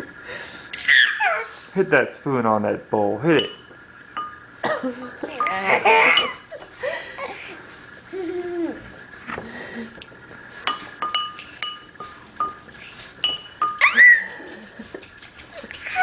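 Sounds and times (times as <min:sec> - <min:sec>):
spoon tapping on a bowl: 0:03.4 - 0:04.4, 0:10.7 - 0:14.0.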